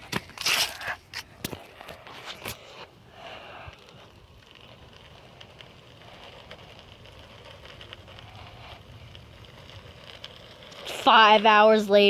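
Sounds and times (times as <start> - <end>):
faint outdoor background noise: 0.0 - 12.0.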